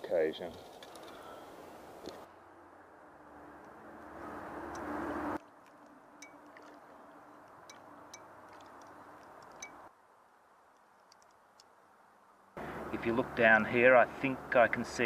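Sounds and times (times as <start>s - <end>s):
faint clicks and clinks: 5.4s - 6.8s, 7.4s - 9.9s.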